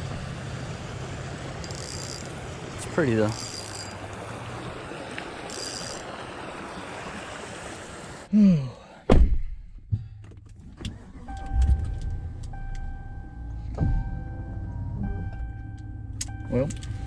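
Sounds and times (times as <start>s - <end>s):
outdoor ambience: 0.0s - 17.0s
door creak: 1.6s - 2.4s, 3.3s - 4.0s, 5.5s - 6.1s
truck door slamming: 9.1s - 9.7s, 13.7s - 14.6s
steady tone: 11.2s - 17.0s.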